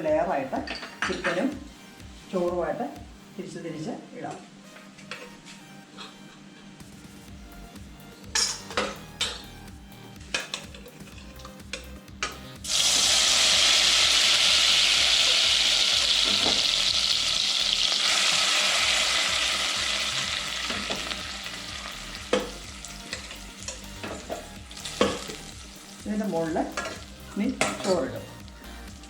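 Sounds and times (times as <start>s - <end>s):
food sizzling in hot fat: 12.5s - 29.0s.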